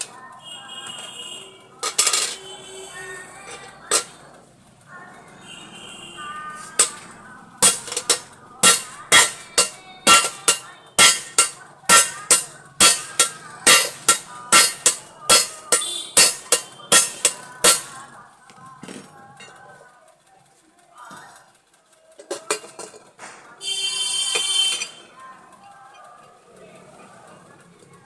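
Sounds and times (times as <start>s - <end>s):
hammer striking metal: 1.8s - 2.8s, 3.5s - 4.2s, 6.6s - 18.1s.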